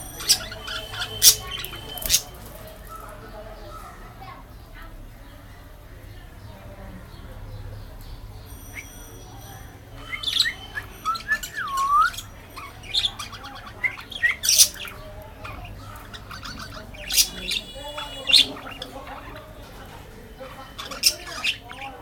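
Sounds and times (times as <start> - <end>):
budgerigar squawks and chirps: 0.0 - 2.3, 10.0 - 19.7, 20.4 - 22.0
warbled bird whistle: 10.0 - 13.1.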